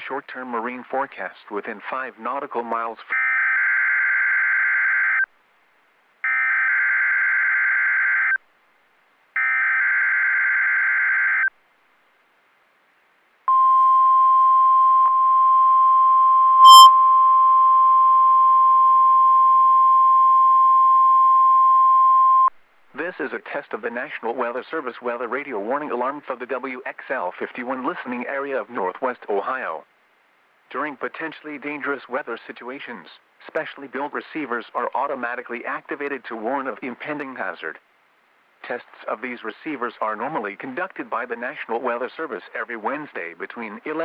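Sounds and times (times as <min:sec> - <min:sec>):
steady warning alarm tone: 0:15.8 - 0:22.5
short sharp blip: 0:16.6 - 0:17.0.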